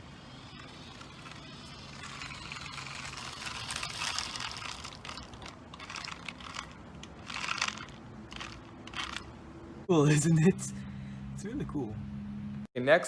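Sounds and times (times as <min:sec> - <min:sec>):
toy car motor whirring: 0:00.0 - 0:09.3.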